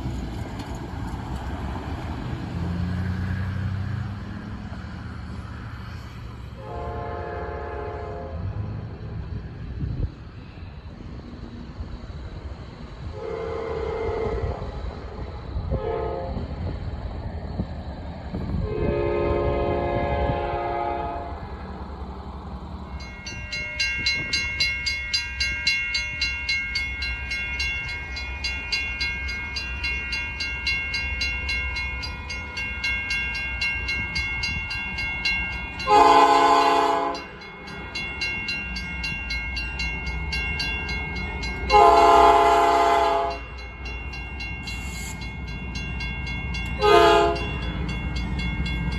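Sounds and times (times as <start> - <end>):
locomotive engine rumbling: 0.0 - 48.9
locomotive horn blasts: 6.6 - 8.6, 13.2 - 14.6, 15.7 - 16.4, 18.6 - 21.4, 35.8 - 37.4, 41.7 - 43.5, 46.8 - 47.6
bell ringing: 23.0 - 48.9.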